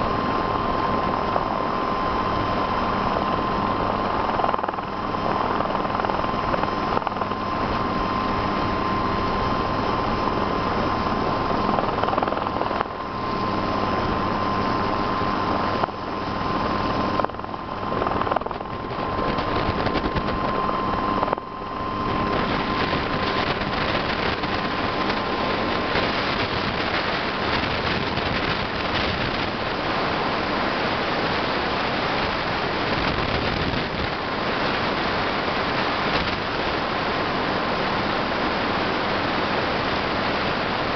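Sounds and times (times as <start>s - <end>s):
helicopter rotor beat: 0.0s - 40.9s
rushing wind noise: 0.0s - 40.9s
turbine engine whine: 0.0s - 40.9s.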